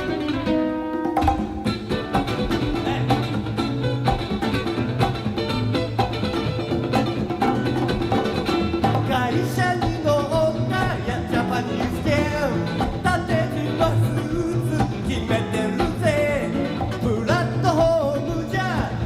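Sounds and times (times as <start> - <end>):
guitar music: 0.0 - 19.0
person singing: 2.6 - 3.5, 9.0 - 19.0.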